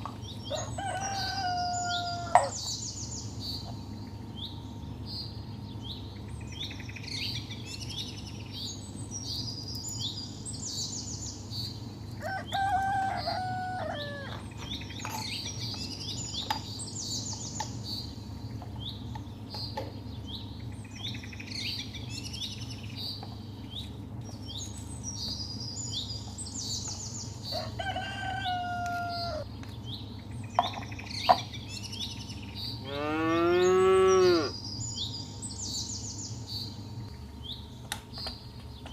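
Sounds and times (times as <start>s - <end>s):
small birds chirping: 0.0s - 38.9s
drawn-out fowl call: 0.5s - 2.6s, 12.2s - 14.5s, 27.6s - 29.5s
rooster crowing: 0.5s - 2.6s, 12.2s - 14.5s, 27.5s - 29.5s.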